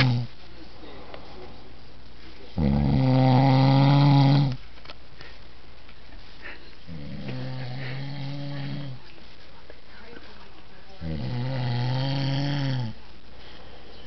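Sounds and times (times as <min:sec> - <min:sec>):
man snoring: 0:02.6 - 0:04.6, 0:06.9 - 0:09.0, 0:11.0 - 0:13.0.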